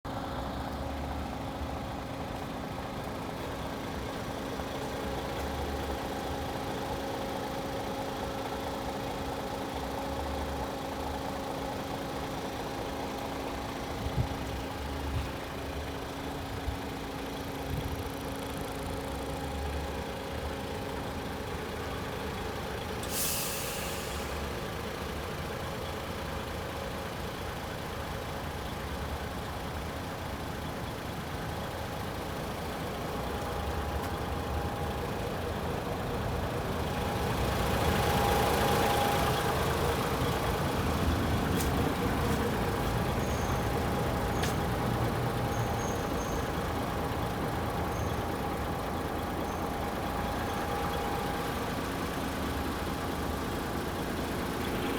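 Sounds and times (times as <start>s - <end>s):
diesel truck engine idling: 0.0s - 54.9s
air hiss: 23.0s - 24.4s.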